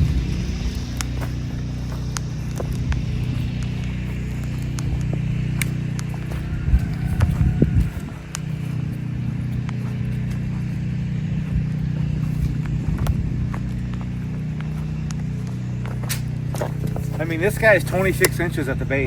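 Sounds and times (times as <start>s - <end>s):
sharp clicks: 0.0s - 6.3s
engine humming: 0.0s - 19.0s
footsteps on debris: 0.0s - 19.0s.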